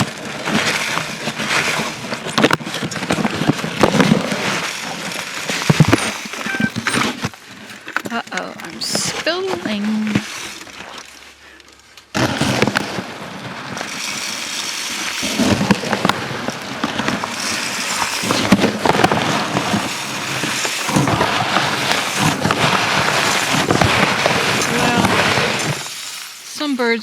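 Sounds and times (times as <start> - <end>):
birdseed pouring and rattling: 3.6 - 7.2, 13.6 - 27.0.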